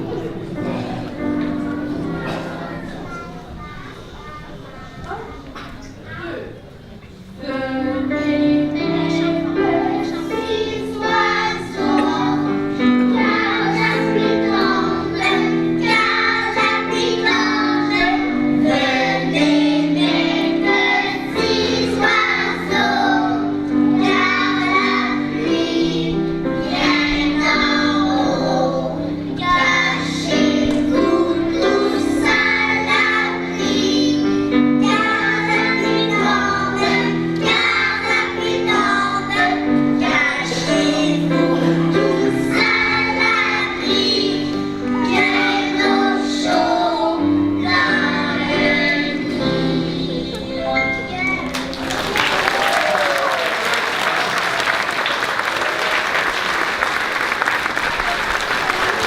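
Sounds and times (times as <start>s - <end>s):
children singing: 7.4s - 51.2s.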